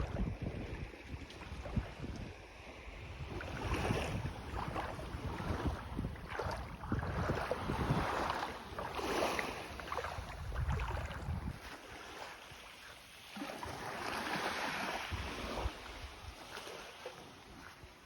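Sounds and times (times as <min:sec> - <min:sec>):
wind rumbling on microphone: 0:00.0 - 0:11.8, 0:14.9 - 0:16.5
small waves washing onto beach: 0:00.0 - 0:18.0.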